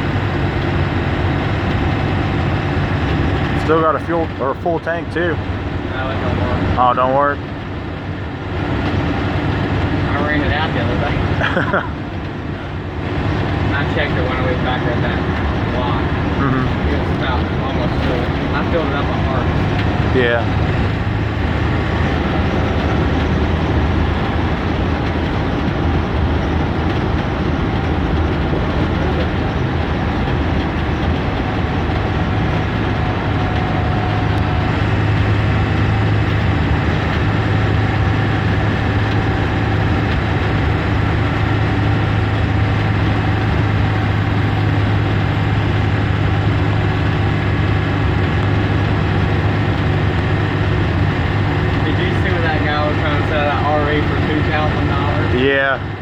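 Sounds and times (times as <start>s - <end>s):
bus engine drone: 0.0s - 56.0s
road and body noise: 0.0s - 56.0s.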